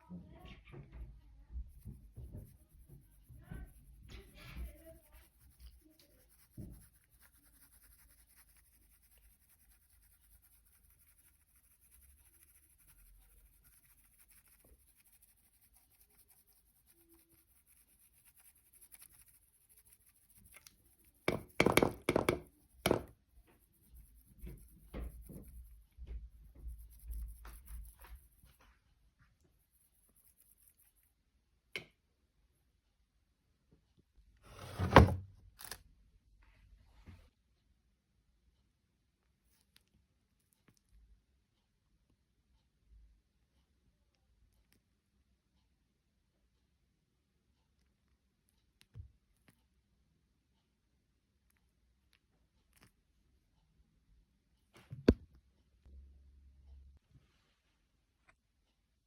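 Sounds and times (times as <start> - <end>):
dishes knocking and clattering: 21.3 - 23.1.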